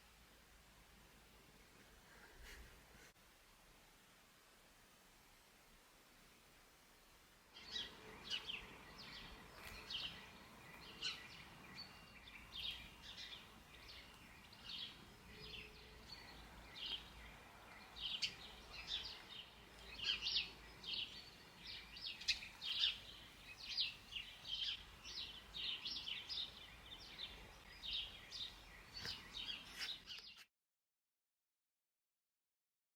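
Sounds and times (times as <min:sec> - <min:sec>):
birds chirping: 0:07.6 - 0:30.5.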